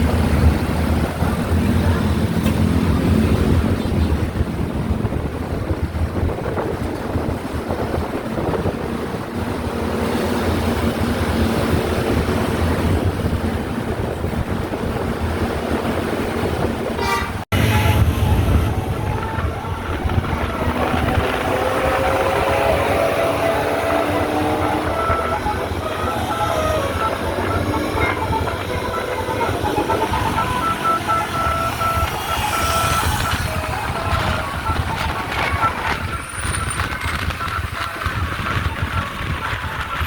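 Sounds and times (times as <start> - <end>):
vehicle and road noise: 0.0 - 40.0
bus multi-tone horn: 17.0 - 40.0.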